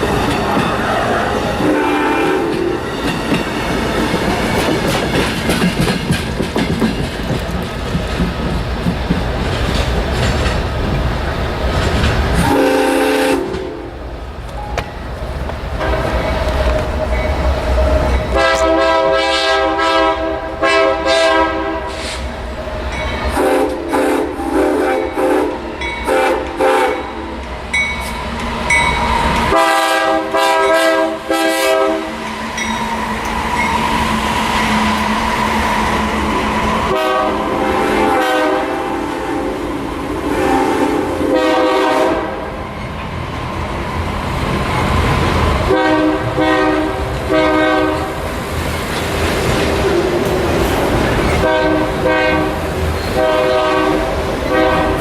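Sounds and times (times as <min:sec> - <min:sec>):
train rumble and wheel clatter: 0:00.0 - 0:55.0
locomotive air horn blasts: 0:01.6 - 0:02.8, 0:12.4 - 0:13.9, 0:18.3 - 0:22.2, 0:23.3 - 0:27.2, 0:29.5 - 0:32.2, 0:36.9 - 0:39.5, 0:40.2 - 0:42.4, 0:45.7 - 0:48.2, 0:51.4 - 0:52.6, 0:53.2 - 0:55.0.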